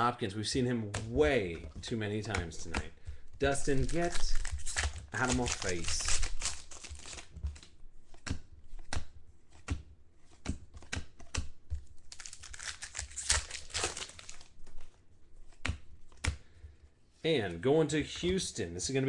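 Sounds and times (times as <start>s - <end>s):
card pack wrappers crinkling: 2.2s - 7.7s, 12.0s - 15.6s.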